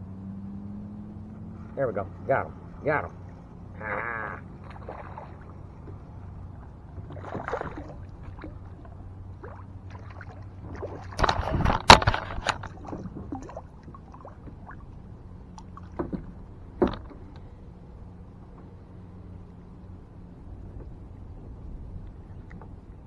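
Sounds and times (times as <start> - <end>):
water splashing: 0.9 - 19.6
knocks on a kayak: 11.2 - 12.8, 16.0 - 17.3.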